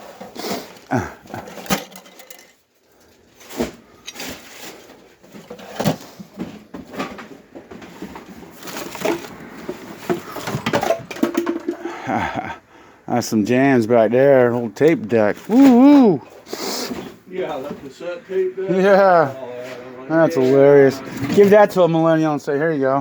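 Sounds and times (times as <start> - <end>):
scrap items knocking and clattering: 0.0 - 2.6, 3.4 - 12.2, 21.0 - 21.6.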